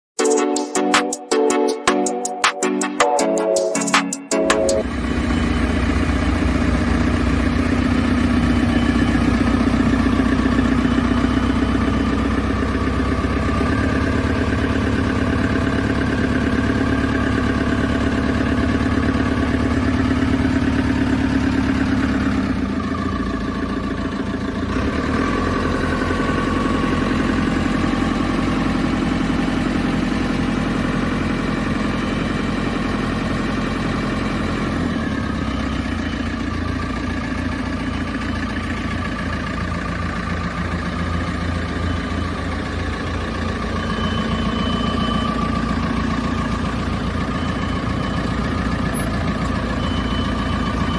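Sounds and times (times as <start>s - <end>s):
diesel engine idling: 4.8s - 50.9s.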